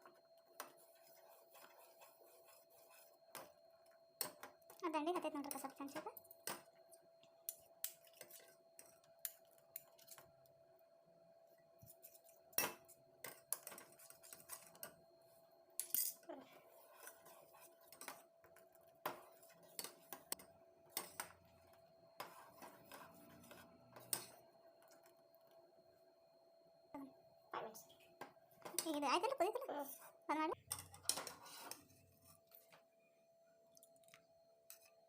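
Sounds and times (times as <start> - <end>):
spoon scraping cooking pot: 30.0 - 32.5.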